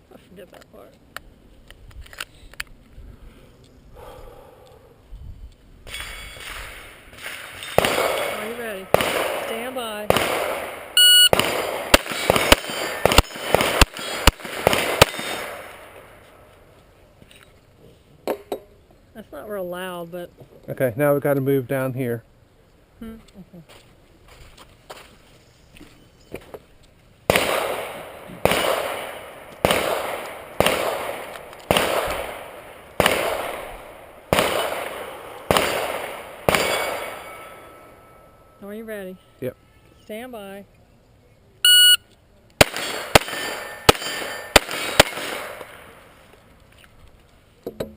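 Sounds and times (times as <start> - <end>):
gunshots with echo: 6.4 - 16.0, 27.3 - 37.4, 42.6 - 46.0
shot timer beep: 11.0 - 11.3, 41.7 - 42.0
pistol shots hitting steel plates: 11.3 - 15.8, 34.3 - 38.1, 42.6 - 45.8.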